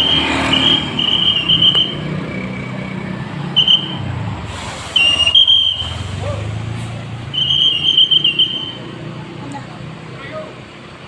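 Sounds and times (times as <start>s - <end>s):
shrill whistle blasts: 0.0s - 2.2s, 3.5s - 4.1s, 4.9s - 6.0s, 7.3s - 8.9s
bus engine running: 0.0s - 11.0s.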